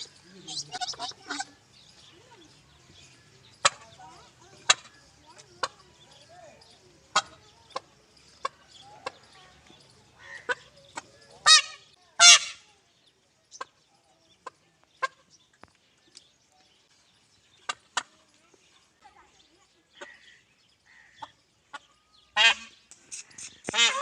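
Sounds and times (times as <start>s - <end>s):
peahen clucking: 0.0s - 12.7s, 13.5s - 15.8s, 17.5s - 19.2s, 19.8s - 24.0s.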